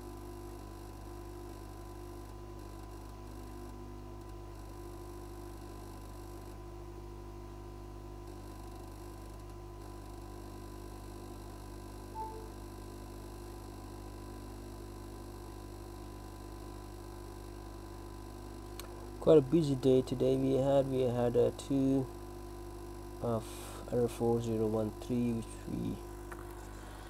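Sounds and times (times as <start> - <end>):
short high beep: 12.2 - 12.6
hot air station humming: 26.3 - 27.0.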